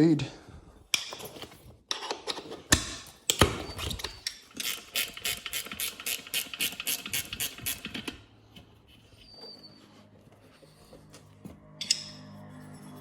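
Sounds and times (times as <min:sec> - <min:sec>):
ratchet-like clicks: 0:04.2 - 0:08.2.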